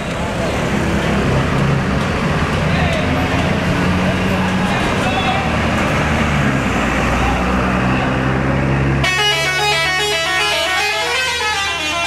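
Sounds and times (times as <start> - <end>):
bus engine rumbling: 0.0 - 12.0
multi-tone musical horn tune: 9.0 - 12.0.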